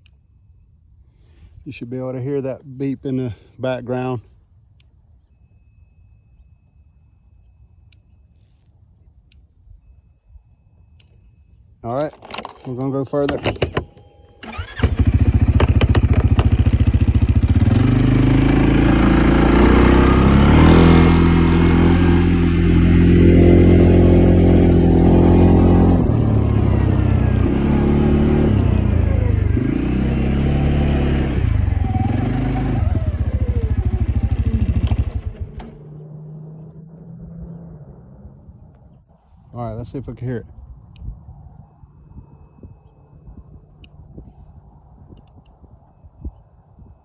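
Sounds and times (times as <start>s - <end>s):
vehicle engine driving off: 14.4s - 39.0s.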